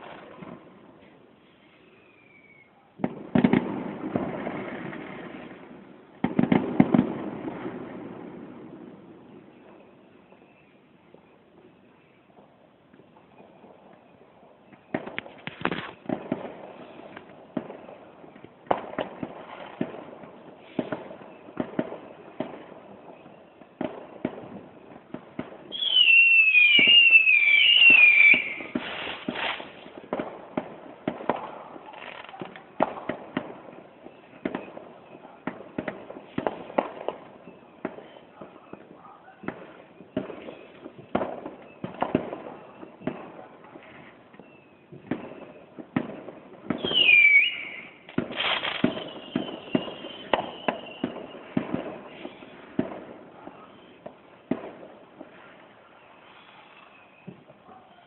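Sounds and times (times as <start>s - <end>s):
distant fireworks bursting: 0.0s - 58.0s
shrill falling whistle: 2.0s - 2.8s, 25.7s - 28.7s, 46.8s - 48.0s, 48.8s - 51.4s.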